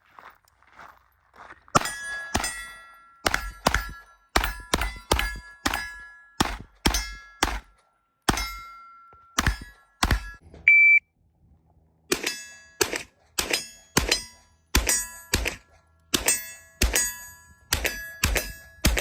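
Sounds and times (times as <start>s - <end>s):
gunshots: 1.8s - 7.7s, 9.4s - 10.4s, 12.1s - 17.1s, 17.7s - 19.0s
shot timer beep: 10.7s - 11.0s.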